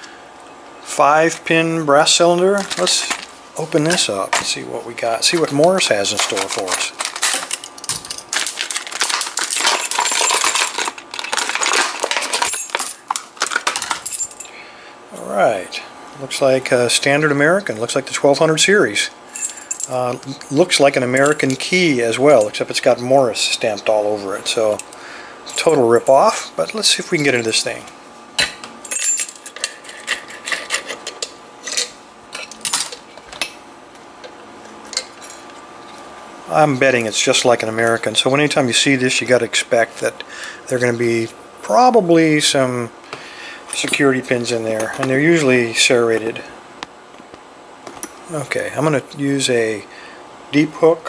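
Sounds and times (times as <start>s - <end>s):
padlock and keys rattling: 6.2s - 14.5s.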